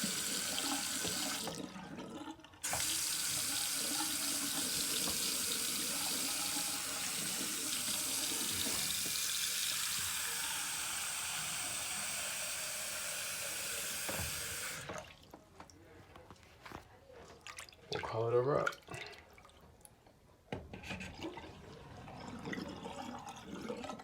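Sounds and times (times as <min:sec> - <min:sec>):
faucet water running into sink: 0:00.0 - 0:15.1.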